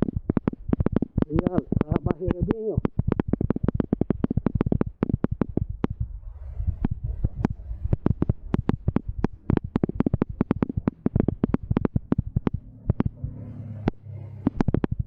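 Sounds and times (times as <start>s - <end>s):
low rumble: 5.5s - 15.0s.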